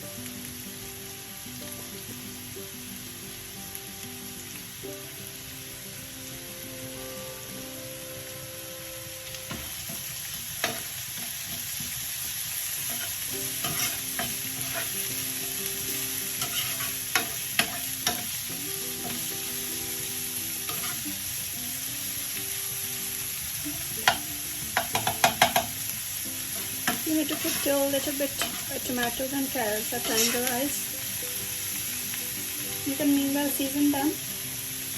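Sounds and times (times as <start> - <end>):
vegetables sizzling in frying pan: 0.0 - 34.9
utensil clicking against pan: 24.8 - 25.7.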